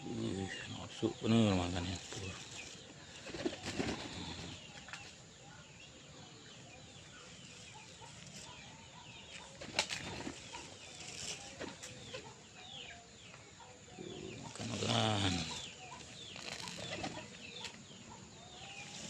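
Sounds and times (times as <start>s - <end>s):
pigeon wings flapping: 3.2s - 4.2s, 9.6s - 10.4s.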